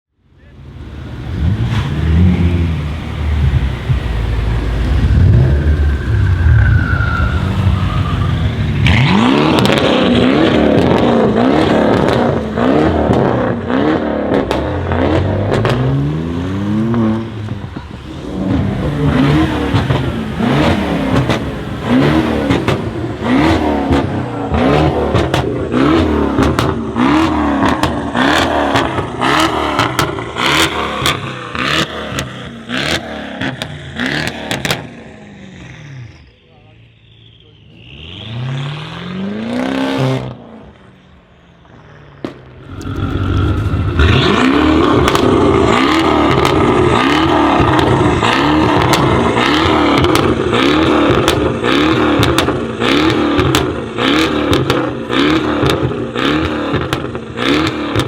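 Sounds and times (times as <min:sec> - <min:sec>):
car exhaust rumble and throttle blips: 0:00.0 - 0:58.0
exhaust crackles and pops: 0:08.8 - 0:35.0, 0:41.6 - 0:58.0.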